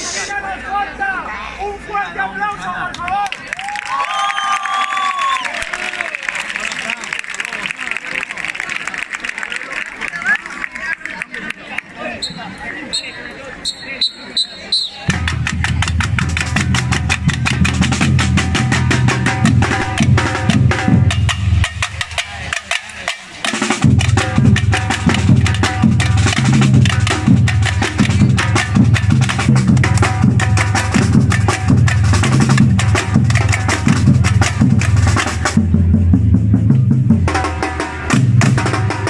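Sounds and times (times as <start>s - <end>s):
deep bass drums: 15.1s - 22.6s, 23.7s - 39.0s
rapid snare drum: 15.1s - 39.0s.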